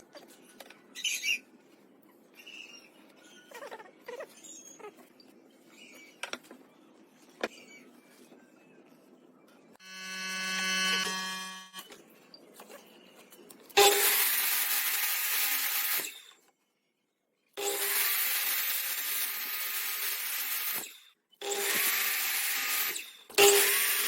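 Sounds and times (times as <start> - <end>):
electric power tool cutting wood: 9.8 - 11.9, 13.8 - 16.2, 17.6 - 24.0.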